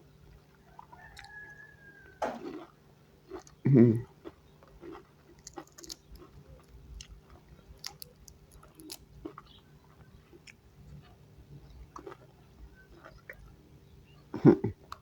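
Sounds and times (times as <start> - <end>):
person chewing: 0.8 - 1.4, 2.2 - 11.2, 11.8 - 13.6.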